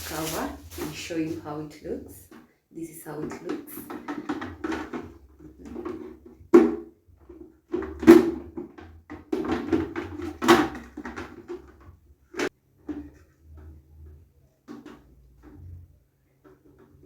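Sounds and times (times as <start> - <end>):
packaging rustling: 0.0 - 1.8.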